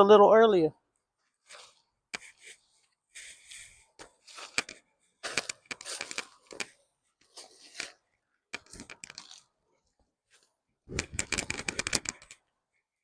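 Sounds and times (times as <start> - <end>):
hands rustling through dry soil: 1.1 - 8.1
scraping and crunching strokes: 1.4 - 8.0, 8.6 - 9.6.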